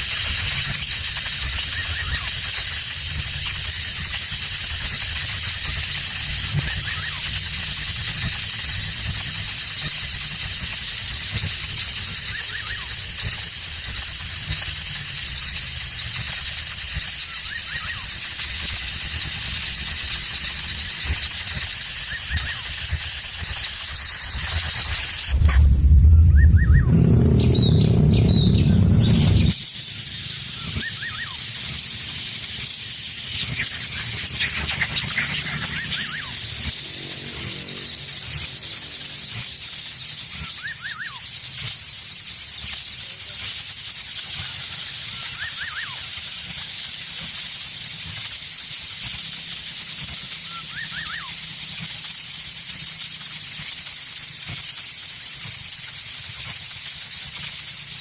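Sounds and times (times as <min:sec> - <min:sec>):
steady high hiss: 0:00.0 - 0:58.0
loud deep sound: 0:25.3 - 0:29.6.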